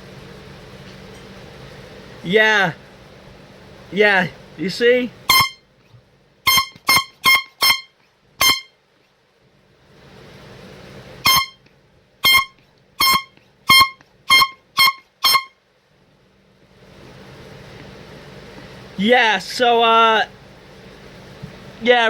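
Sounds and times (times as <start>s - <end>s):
hand-pump air horn blasts: 5.2s - 5.7s, 6.4s - 8.8s, 11.2s - 15.6s.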